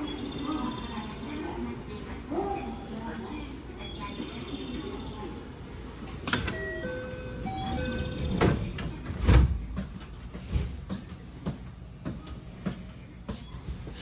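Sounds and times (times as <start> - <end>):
train car knocks and clunks: 6.3 - 14.0.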